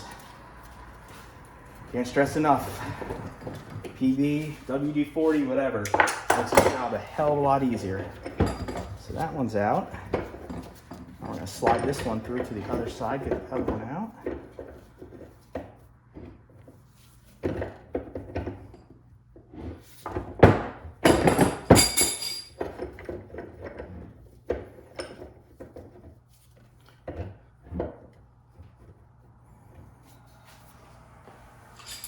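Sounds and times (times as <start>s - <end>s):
metal parts knocking and clinking: 8.2s - 9.2s, 21.0s - 23.0s, 31.7s - 32.0s.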